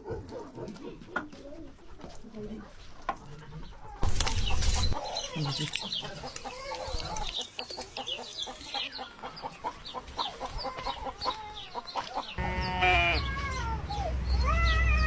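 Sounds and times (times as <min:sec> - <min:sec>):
chickens clucking: 0:00.2 - 0:14.8
goat or sheep bleating: 0:12.4 - 0:13.6.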